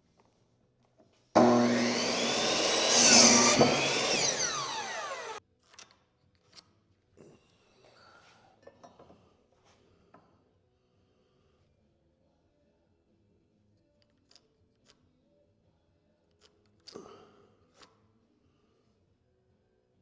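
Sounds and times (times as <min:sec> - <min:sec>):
power saw cutting wood: 0:01.4 - 0:05.4.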